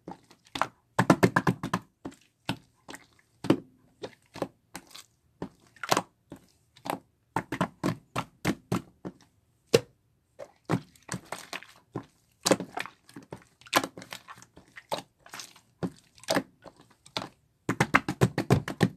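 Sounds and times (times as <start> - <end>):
sharp knocks and taps: 17.2 - 18.9.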